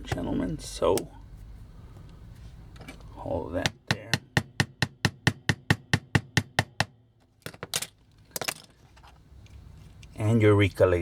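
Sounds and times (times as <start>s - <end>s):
hammer tapping metal: 3.6s - 7.0s.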